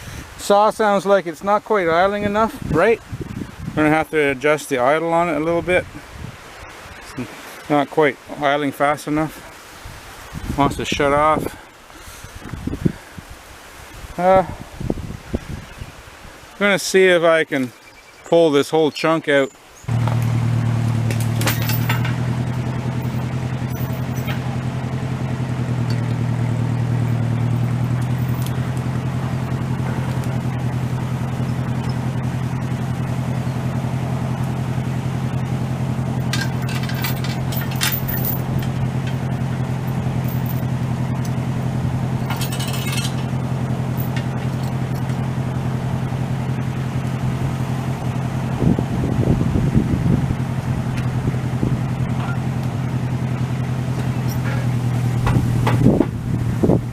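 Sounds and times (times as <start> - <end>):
light rattles: 19.9 - 48.6, 49.9 - 56.9
engine running steadily: 19.9 - 56.9.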